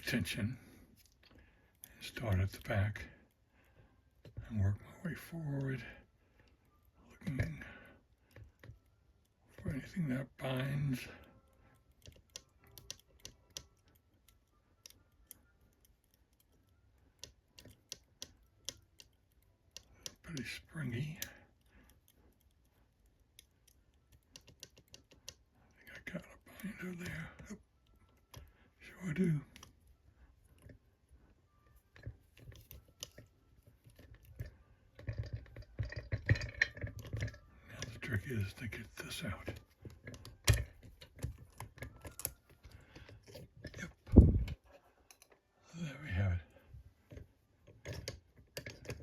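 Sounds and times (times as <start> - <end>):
metallic clicks of lock picking: 11.7 - 25.5, 31.9 - 45.3, 47.1 - 49.0.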